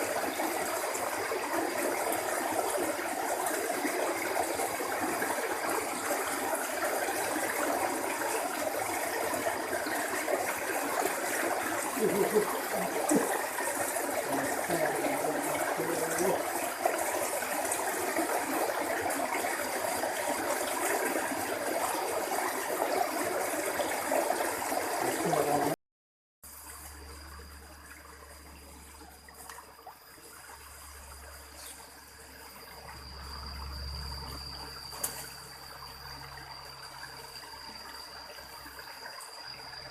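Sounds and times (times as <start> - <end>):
flowing water rushing: 0.0 - 25.8
steady high-pitched tone: 26.8 - 39.9.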